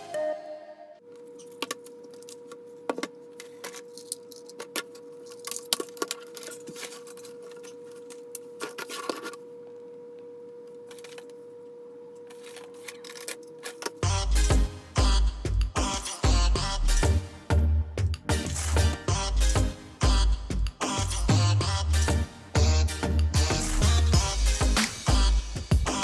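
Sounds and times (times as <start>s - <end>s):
high-pitched hum: 14.0s - 26.0s.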